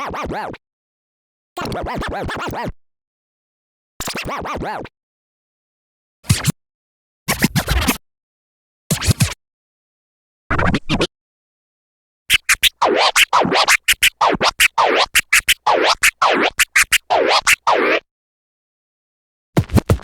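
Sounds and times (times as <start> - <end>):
turntable record scratches: 12.3 - 18.0, 19.6 - 20.0.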